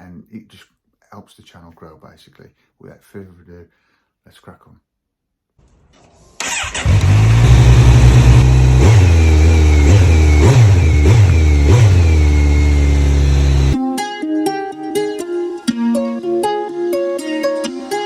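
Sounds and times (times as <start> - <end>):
car engine starting and idling: 5.6 - 13.8
engine revving: 6.0 - 13.8.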